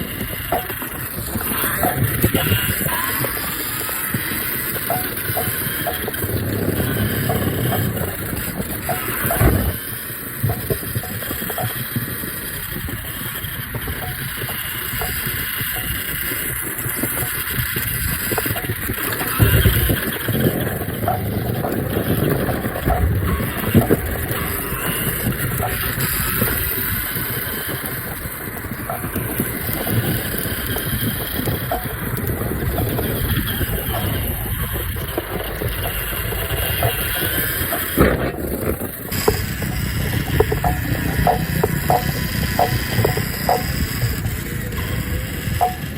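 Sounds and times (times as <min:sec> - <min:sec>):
high motor whine: 0:00.0 - 0:45.9
rc car rattling over paving: 0:00.0 - 0:45.9
rumbling bumps: 0:00.0 - 0:45.9
wind rushing over microphone: 0:00.0 - 0:45.9.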